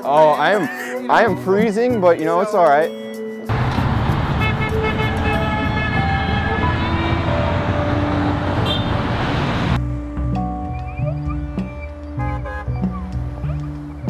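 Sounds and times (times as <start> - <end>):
car horns honking: 3.5 - 9.8, 12.2 - 13.0
road traffic passing close by: 3.5 - 9.8.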